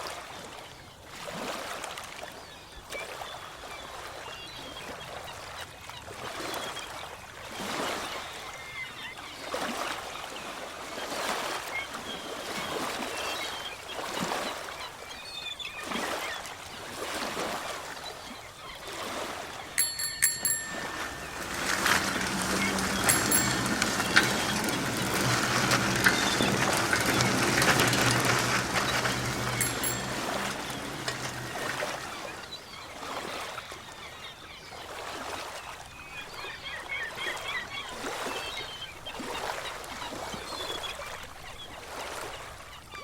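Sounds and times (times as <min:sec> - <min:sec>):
ocean waves washing on shore: 0:18.8 - 0:34.0
short high metallic ring: 0:19.8 - 0:32.5.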